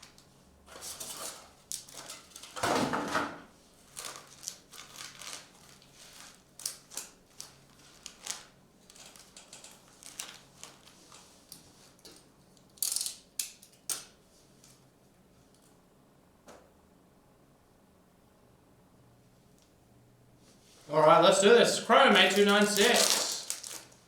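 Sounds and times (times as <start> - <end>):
card packs rustling and crinkling: 3.9 - 12.0, 21.0 - 24.0.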